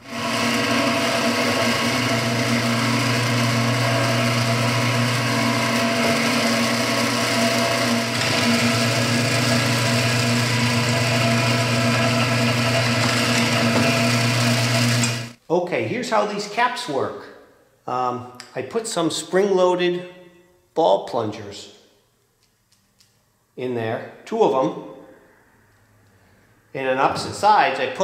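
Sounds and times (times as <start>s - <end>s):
power tool motor whining: 0.0s - 15.4s.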